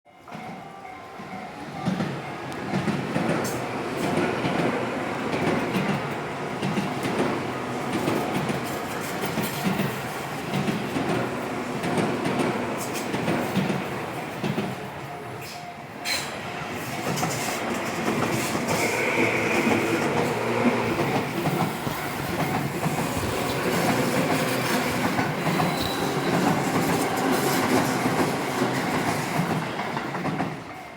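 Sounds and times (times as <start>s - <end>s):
train wheels clattering: 1.8s - 30.8s
wheel squeal: 18.3s - 27.5s.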